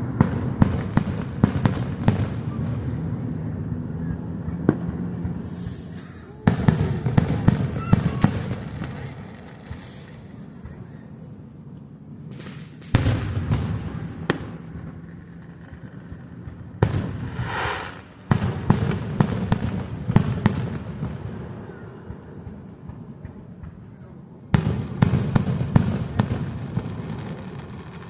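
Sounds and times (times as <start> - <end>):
sharp firework bangs: 0.0 - 3.1, 4.7 - 11.0, 12.3 - 21.5
fireworks booms with rumbling tail: 0.0 - 3.6, 4.4 - 11.0, 12.3 - 28.0.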